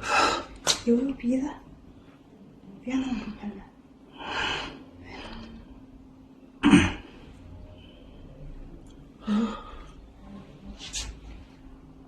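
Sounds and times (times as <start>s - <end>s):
person coughing: 6.6s - 7.1s.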